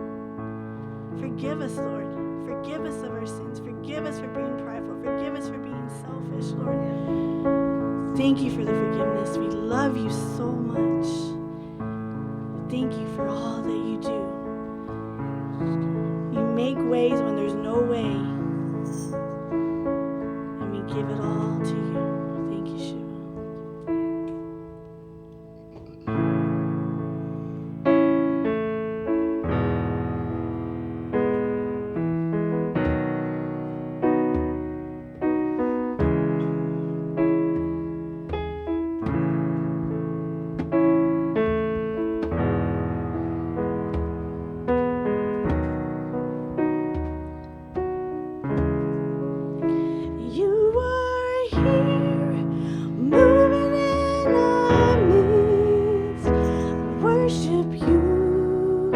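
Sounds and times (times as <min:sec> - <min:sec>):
piano playing slow chords: 0:00.0 - 0:58.9
person singing wordlessly: 0:50.2 - 0:58.9.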